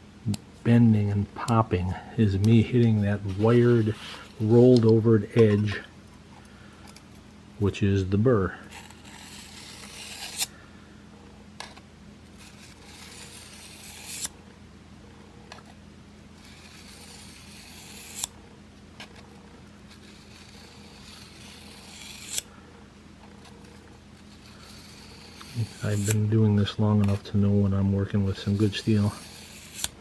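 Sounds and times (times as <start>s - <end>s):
blade rasping on sharpening plate: 28.5s - 29.9s.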